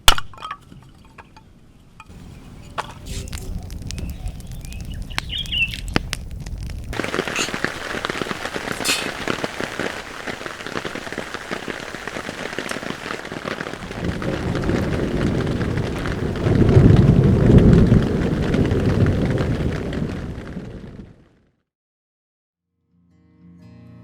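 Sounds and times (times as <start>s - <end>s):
bird chirp: 1.2s - 6.0s
heavy rain pattering: 2.1s - 21.4s.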